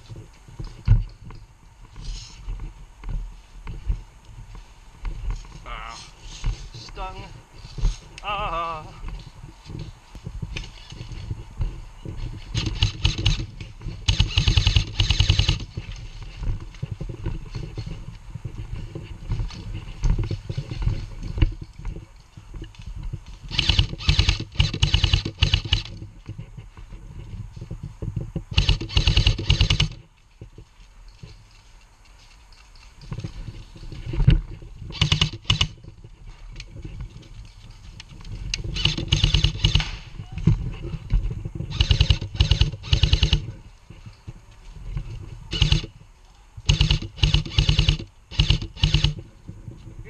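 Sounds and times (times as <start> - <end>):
airsoft guns firing bursts: 12.4 - 16.0, 23.5 - 26.0, 28.5 - 30.1, 34.9 - 35.9, 38.7 - 40.1, 41.7 - 43.6, 45.5 - 46.0, 46.7 - 49.2.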